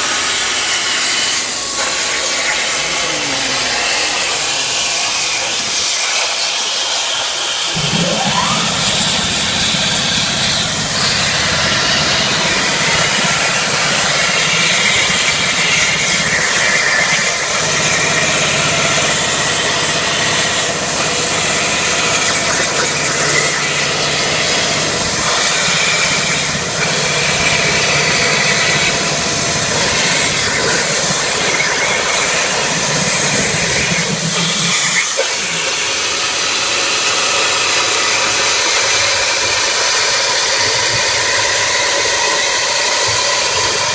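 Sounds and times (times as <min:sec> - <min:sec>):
plasma torch cutting metal: 0:00.0 - 0:43.9
machine hum: 0:00.2 - 0:06.0, 0:07.6 - 0:35.0.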